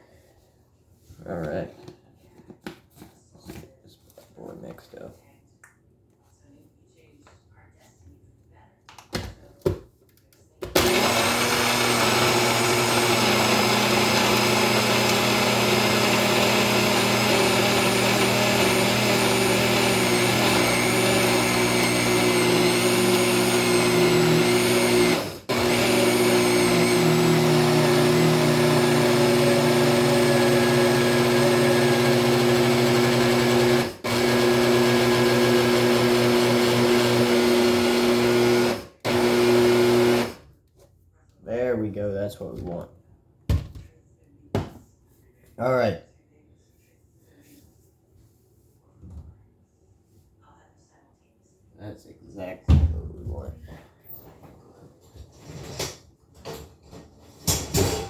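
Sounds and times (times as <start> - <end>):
blender crushing ice: 10.7 - 40.4.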